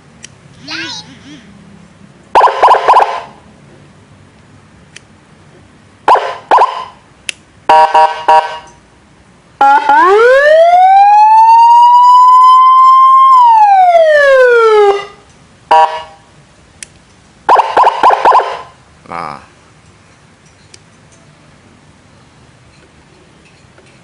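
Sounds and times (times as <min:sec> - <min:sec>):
electronic siren wailing: 0:02.4 - 0:03.4, 0:06.1 - 0:06.9, 0:09.6 - 0:15.2, 0:17.5 - 0:18.7.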